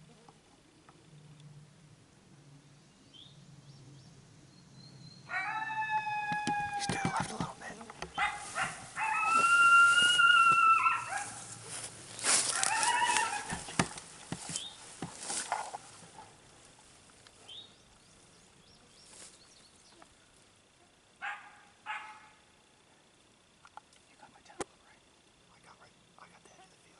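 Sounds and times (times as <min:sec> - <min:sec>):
coyote howling: 0:05.3 - 0:07.3, 0:08.0 - 0:13.8
coyote yips: 0:08.1 - 0:11.4, 0:12.5 - 0:13.6.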